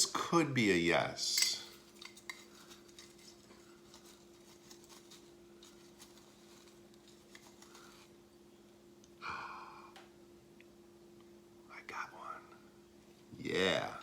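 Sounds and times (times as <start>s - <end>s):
steady low hum: 0.0s - 14.0s
tongs scratching through dirt: 1.7s - 8.2s.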